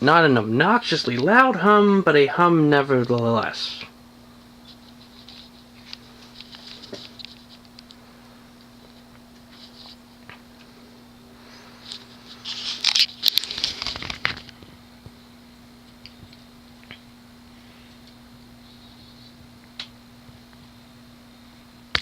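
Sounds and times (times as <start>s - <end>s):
ceiling fan motor humming: 0.0s - 22.0s
rustling and clicking: 4.4s - 8.0s, 11.8s - 14.8s.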